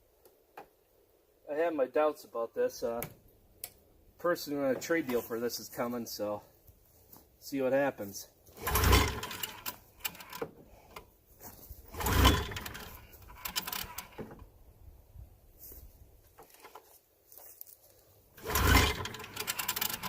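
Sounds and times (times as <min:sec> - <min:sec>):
recoil rope pull: 0:08.6 - 0:10.4, 0:11.9 - 0:14.3, 0:18.4 - 0:20.0
snowmobile engine turning over: 0:08.6 - 0:10.4, 0:11.9 - 0:14.2, 0:18.4 - 0:20.0
clicks and rattles: 0:11.9 - 0:14.4, 0:18.4 - 0:20.0.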